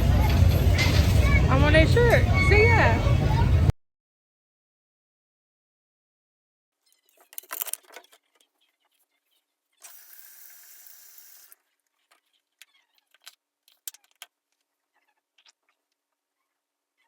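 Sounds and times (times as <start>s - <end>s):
clicks and rattles of objects handled: 6.8s - 9.1s, 11.5s - 16.2s.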